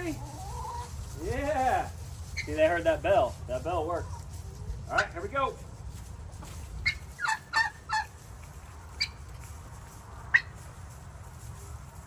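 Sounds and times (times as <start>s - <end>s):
hens clucking and squawking: 0.0s - 5.2s, 6.6s - 9.5s.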